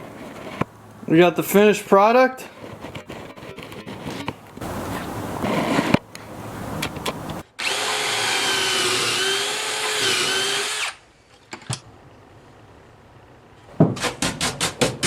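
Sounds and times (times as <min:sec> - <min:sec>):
rustling handling noise: 0:02.4 - 0:07.4
power drill whining: 0:07.6 - 0:11.0.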